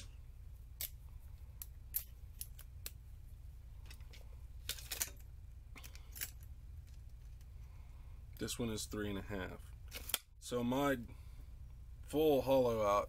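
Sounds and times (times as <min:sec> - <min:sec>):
low steady hum: 0:00.0 - 0:13.0
small metal bits clicking: 0:03.8 - 0:07.5.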